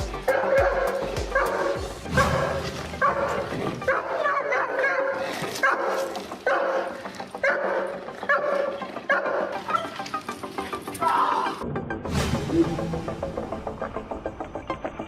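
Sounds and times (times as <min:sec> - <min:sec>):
dog barking: 0:00.3 - 0:10.0.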